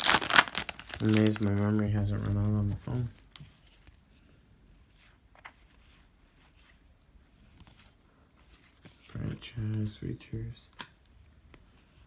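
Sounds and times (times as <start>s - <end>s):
trading cards rustling: 0.0s - 3.9s.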